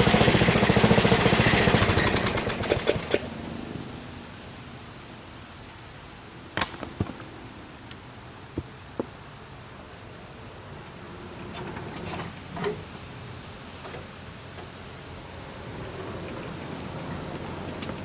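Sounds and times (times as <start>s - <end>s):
insects chirping: 3.2s - 18.0s
sharp knocks and clacks: 6.6s - 7.3s.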